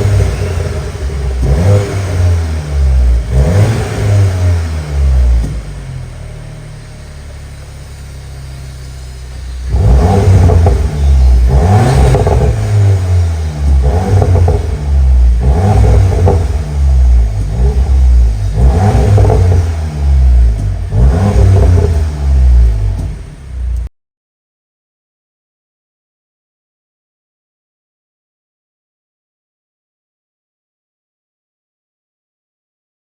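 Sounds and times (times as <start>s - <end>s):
car engine idling and revving: 0.0s - 23.9s.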